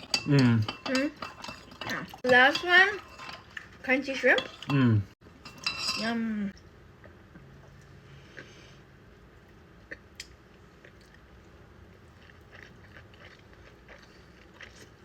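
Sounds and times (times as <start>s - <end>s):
chewing crunchy food: 9.4s - 15.0s.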